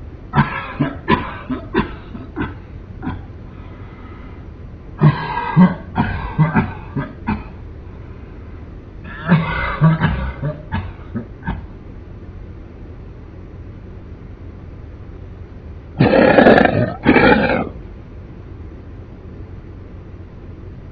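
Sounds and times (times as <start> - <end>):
man coughing: 0.4 - 3.3, 5.0 - 7.6, 9.1 - 11.7.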